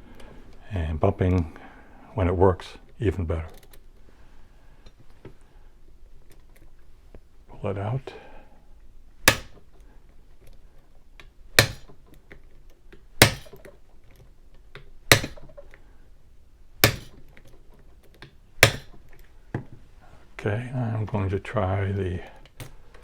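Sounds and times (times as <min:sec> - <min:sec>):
mallet tapping key in padlock: 0:09.3 - 0:09.6, 0:11.6 - 0:11.9, 0:13.2 - 0:13.7, 0:15.1 - 0:15.6, 0:16.8 - 0:17.5, 0:18.6 - 0:19.0.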